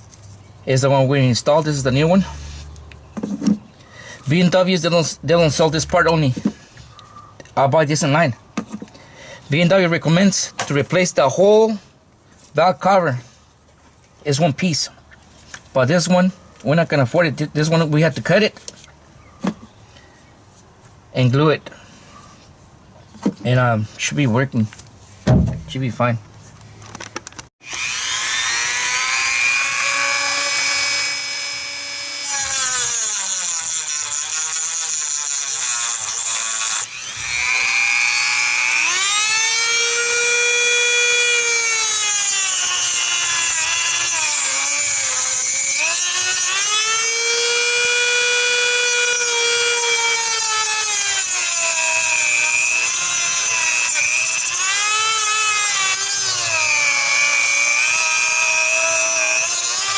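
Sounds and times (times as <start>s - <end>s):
power tool cutting plastic: 4.5s - 6.5s, 27.6s - 59.9s.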